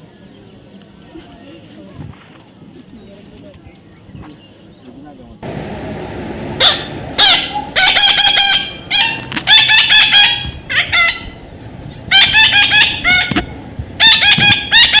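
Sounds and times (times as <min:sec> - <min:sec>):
parrot calling: 0:06.6 - 0:15.0.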